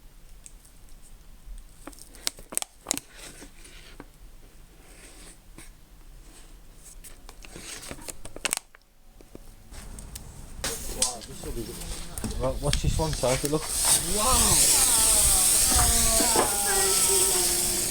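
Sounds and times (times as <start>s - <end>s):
firework fountain crackling: 9.8s - 17.9s.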